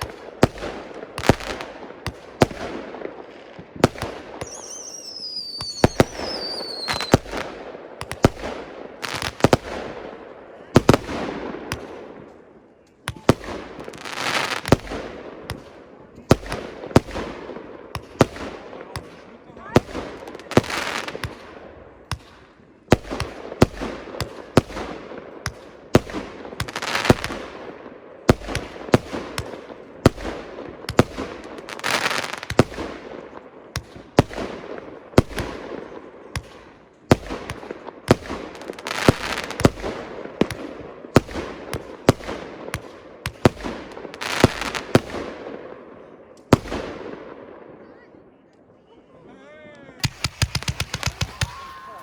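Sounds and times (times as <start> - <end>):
firework crackling and hissing: 0.0 - 10.0, 13.1 - 15.7, 22.1 - 27.6, 28.3 - 33.0, 37.2 - 45.2, 50.0 - 52.0
firework bangs: 0.0 - 10.1, 10.8 - 12.3, 13.1 - 45.6, 50.0 - 52.0.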